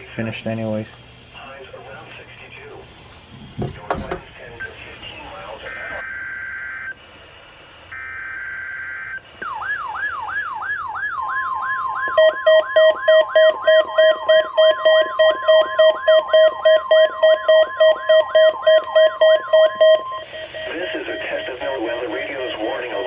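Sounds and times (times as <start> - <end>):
steady warning alarm tone: 4.6 - 23.0
falling siren-like sweep: 8.0 - 20.4
pulsing beep: 12.1 - 23.0.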